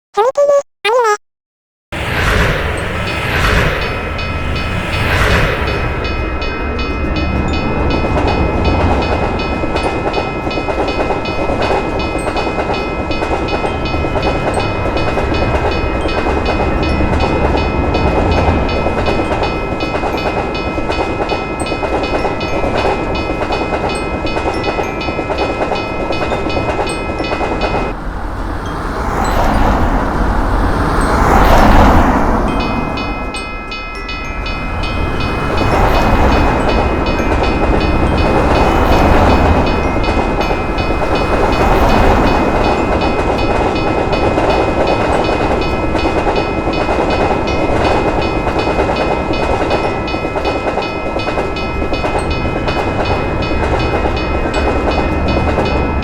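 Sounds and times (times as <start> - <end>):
train rumbling past: 2.0 - 56.0
railroad crossing bell ringing: 2.2 - 56.0.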